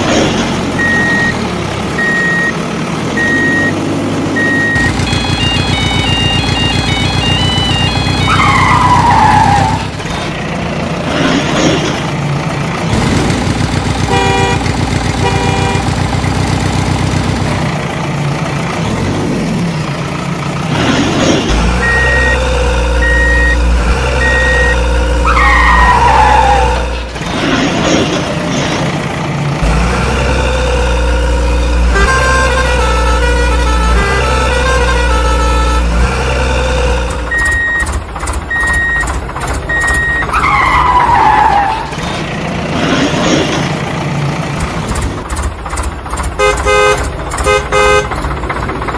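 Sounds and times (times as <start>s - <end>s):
truck engine rumble: 0.0s - 48.9s
evenly spaced beeps: 0.7s - 9.6s, 21.6s - 26.2s, 36.8s - 40.3s
truck horn toots: 4.4s - 9.8s, 14.0s - 16.3s, 30.4s - 37.7s, 46.4s - 48.3s.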